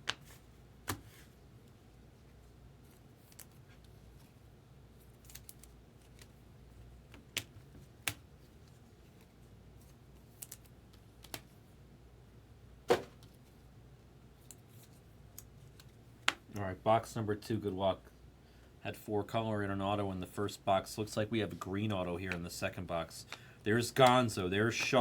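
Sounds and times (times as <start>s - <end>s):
trading cards and packaging clicking: 23.2s - 25.0s.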